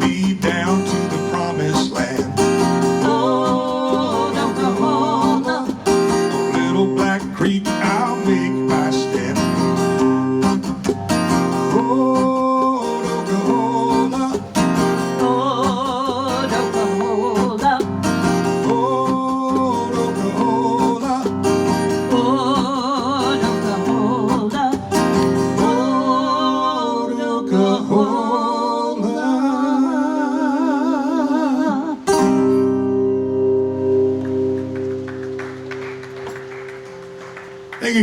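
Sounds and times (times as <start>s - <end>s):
live country band playing: 0.0s - 27.4s, 32.1s - 38.0s
held melody line: 0.0s - 28.4s
strummed acoustic guitar: 0.0s - 38.0s.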